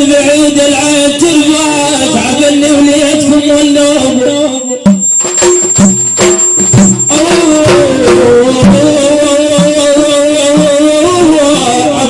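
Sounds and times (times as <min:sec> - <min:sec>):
wavering melody line: 0:04.8 - 0:08.9
hand drum strokes: 0:04.9 - 0:09.0.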